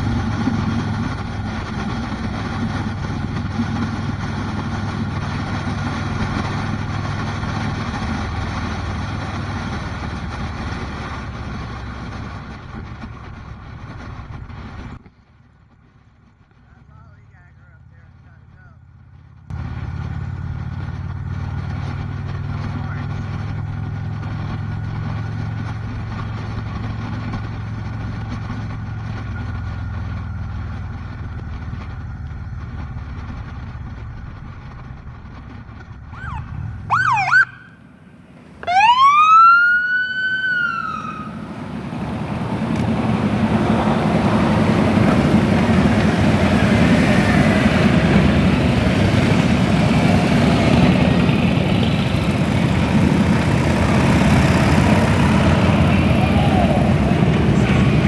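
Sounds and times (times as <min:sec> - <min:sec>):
engine hum: 0:00.0 - 0:58.0
motorcycle engines rumbling: 0:00.0 - 0:58.0
road noise: 0:00.0 - 0:58.0
siren yelp and wail: 0:36.1 - 0:37.8, 0:38.6 - 0:41.5, 0:55.4 - 0:58.0.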